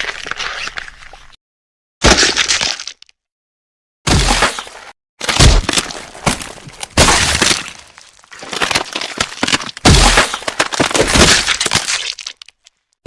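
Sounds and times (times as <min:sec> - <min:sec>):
bones cracking and crunching: 0:04.1 - 0:13.0.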